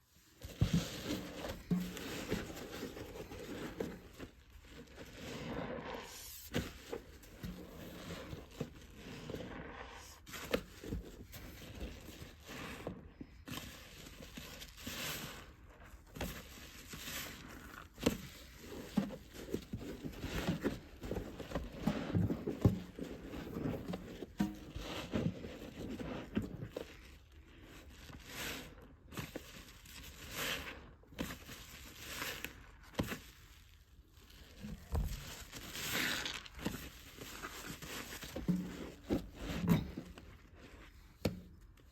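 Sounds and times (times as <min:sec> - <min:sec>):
wet sponge squeezed: 0:31.9 - 0:39.1.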